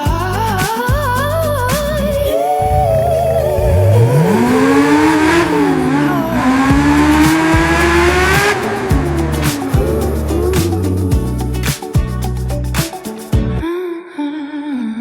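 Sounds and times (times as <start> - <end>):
sustained bass notes: 0.0 - 12.8, 13.4 - 13.6
sliding melody line: 2.0 - 13.5.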